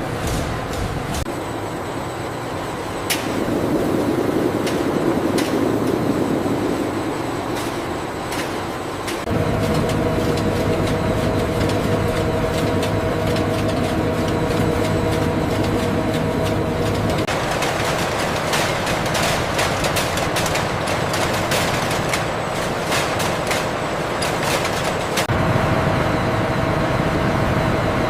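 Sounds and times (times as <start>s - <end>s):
industrial machinery rumbling: 0.0s - 28.0s
machine hum with held tones: 0.0s - 28.0s
machine clicks and clatter: 4.6s - 25.3s.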